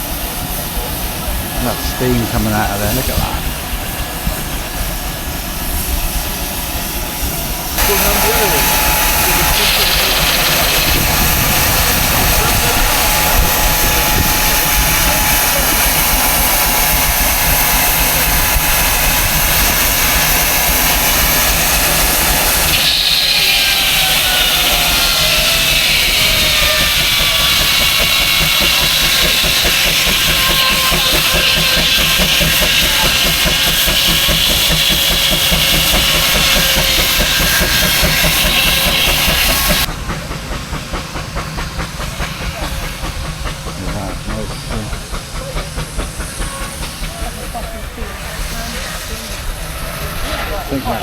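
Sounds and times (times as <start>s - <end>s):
steam engine hissing: 0.0s - 51.0s.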